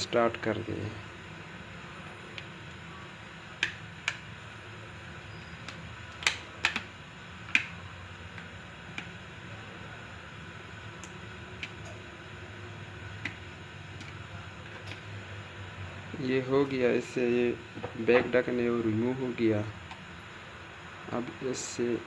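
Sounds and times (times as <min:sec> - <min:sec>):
plastic clicks and snaps: 0:03.6 - 0:04.3, 0:05.6 - 0:09.2, 0:11.0 - 0:12.0, 0:13.2 - 0:13.4.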